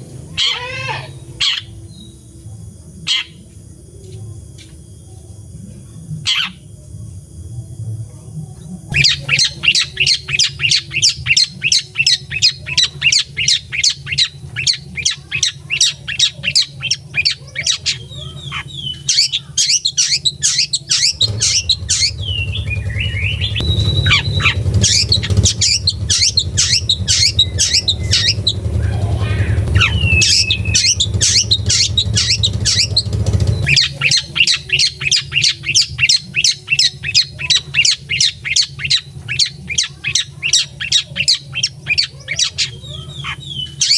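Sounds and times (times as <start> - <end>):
shrike harsh chattering calls: 0.1 - 1.9, 3.0 - 3.4, 6.2 - 6.7, 8.8 - 43.9
low rumble: 3.8 - 17.2, 18.0 - 41.9
whistled sliding bird notes: 8.9 - 28.8, 29.8 - 43.9.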